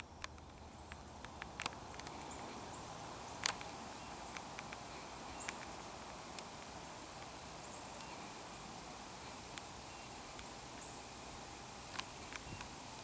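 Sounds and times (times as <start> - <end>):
outdoor background hiss: 0.0 - 13.0
faint sharp ticks: 3.4 - 7.4.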